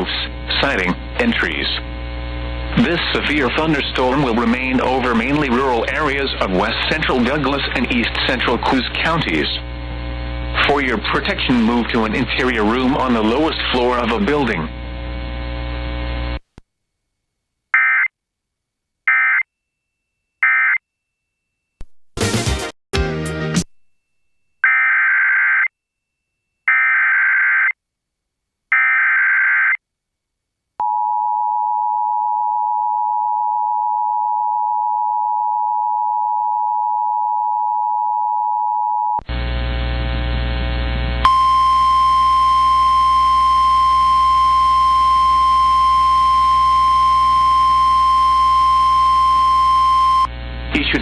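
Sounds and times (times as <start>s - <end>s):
hum and noise: 0.0s - 16.4s, 39.2s - 51.0s
steady warning alarm tone: 41.2s - 50.3s
screeching data tones: 41.3s - 50.3s.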